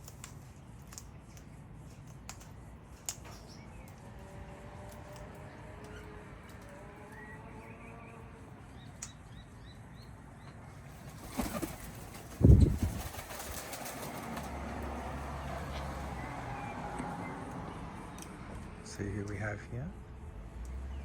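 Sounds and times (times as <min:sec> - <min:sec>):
faint birds chirping: 0:00.0 - 0:21.0
large bird flapping wings: 0:11.0 - 0:14.8.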